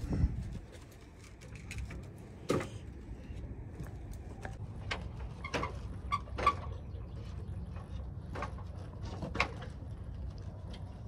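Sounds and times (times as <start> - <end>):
steady low rumble: 0.0 - 6.1.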